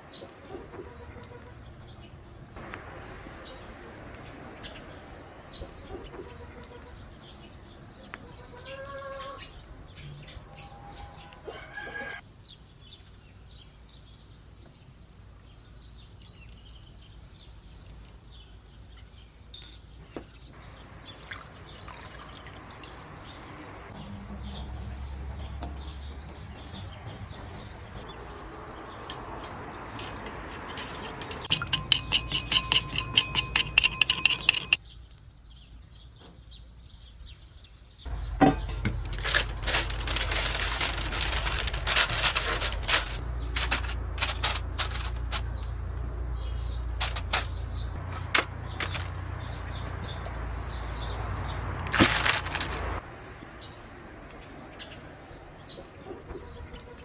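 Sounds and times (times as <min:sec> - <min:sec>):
chickens calling: 0:00.0 - 0:12.2, 0:38.1 - 0:57.0.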